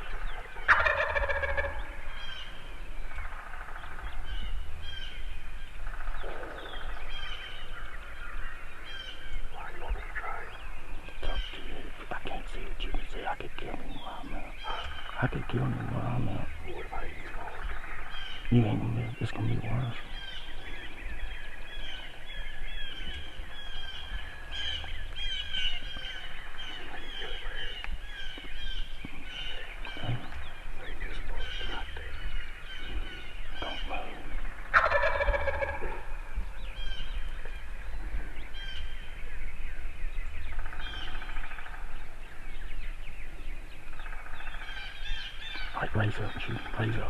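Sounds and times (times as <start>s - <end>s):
turkey gobbling: 0.0s - 2.6s, 5.8s - 8.0s, 8.8s - 27.8s, 28.6s - 36.2s, 40.5s - 41.9s
small songbirds chirping: 0.0s - 47.0s.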